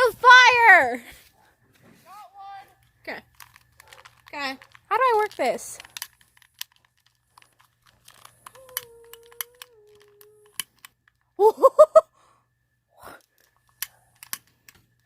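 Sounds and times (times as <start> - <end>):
small clicks and crunches: 2.7 - 11.4, 13.0 - 15.0
person humming: 8.5 - 10.6.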